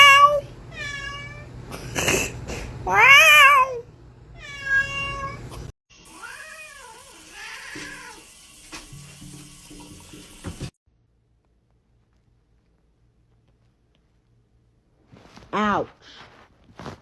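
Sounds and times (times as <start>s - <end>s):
cat meowing: 0.0s - 1.5s, 2.9s - 3.8s, 4.4s - 5.5s.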